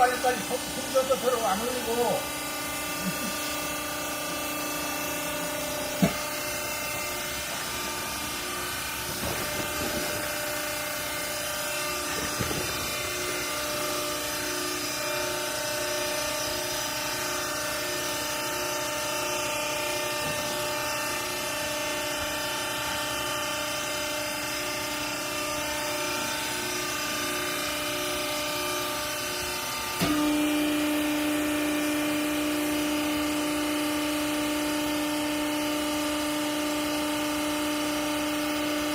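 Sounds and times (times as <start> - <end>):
hydraulic motor and pump humming: 0.0 - 38.9.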